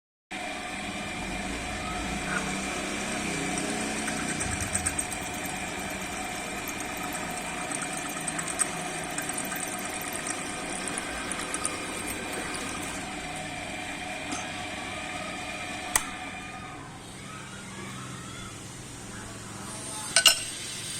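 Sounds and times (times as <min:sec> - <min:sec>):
drill press motor whine: 0:00.4 - 0:18.9
sharp click: 0:15.9 - 0:16.2.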